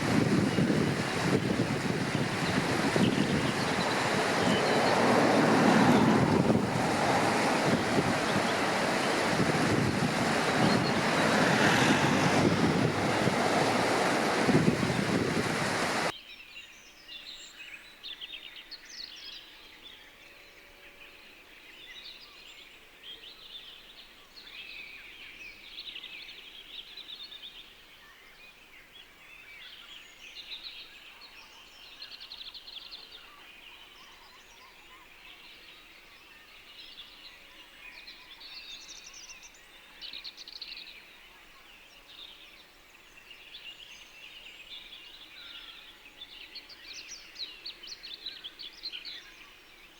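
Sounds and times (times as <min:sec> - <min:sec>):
birds singing and calling: 0:00.3 - 0:19.5.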